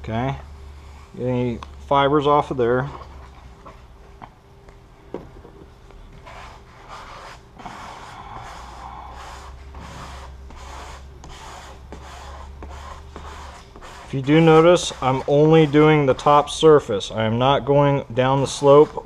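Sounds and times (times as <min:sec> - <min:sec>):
rubbing strokes on car hood: 0:06.2 - 0:16.6.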